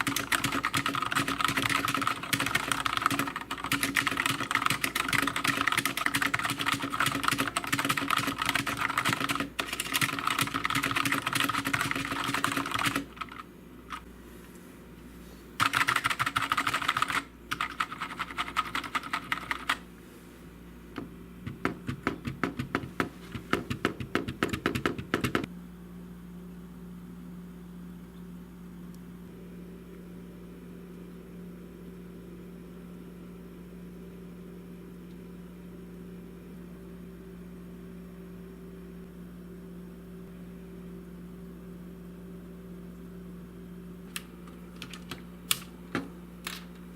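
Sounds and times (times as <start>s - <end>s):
mechanical keyboard typing: 0.0s - 14.0s, 15.6s - 19.8s, 21.5s - 25.5s, 44.2s - 45.7s
steady low hum: 0.0s - 46.9s.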